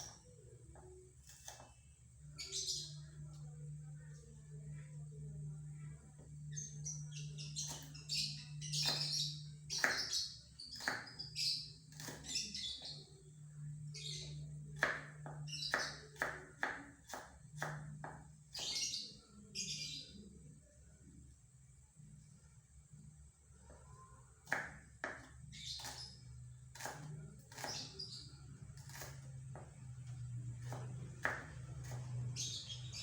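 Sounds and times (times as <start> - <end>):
bird chirping: 2.2 - 3.3, 6.4 - 16.2, 18.5 - 20.3, 25.4 - 29.2, 30.6 - 33.0.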